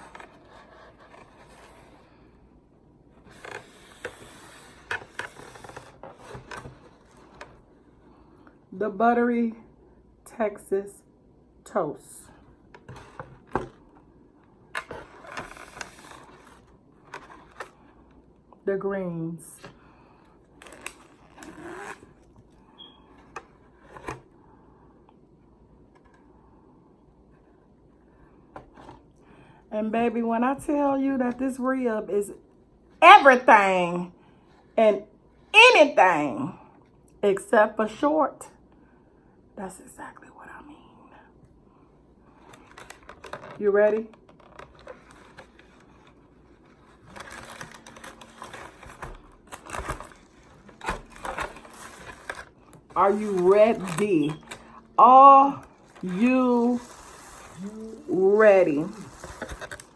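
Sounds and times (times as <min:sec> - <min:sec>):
container rustle: 0:44.4 - 0:54.9, 0:55.6 - 0:59.9
food packaging crackling: 0:46.8 - 0:54.9, 0:55.6 - 0:59.9.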